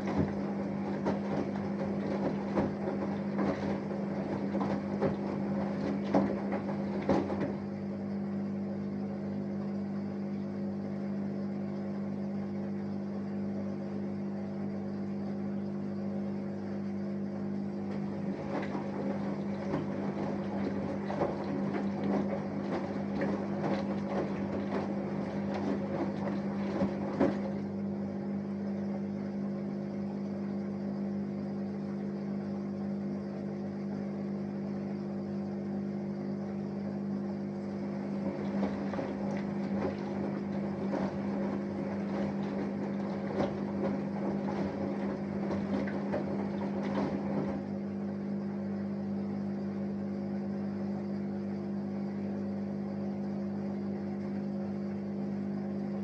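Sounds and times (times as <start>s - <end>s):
washing machine drum churning: 0.0s - 13.9s, 16.2s - 30.4s, 36.1s - 49.3s
washing machine motor hum: 0.0s - 56.0s.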